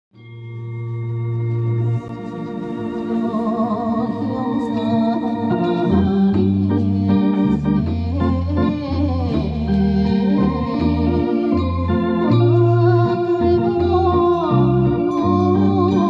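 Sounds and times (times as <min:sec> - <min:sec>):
electronic keyboard organ music: 0:00.2 - 0:16.0.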